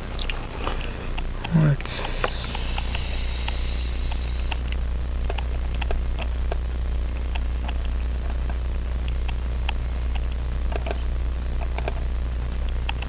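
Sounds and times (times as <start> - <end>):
thin high whine: 0.0 - 7.3
steady low hum: 0.0 - 13.0.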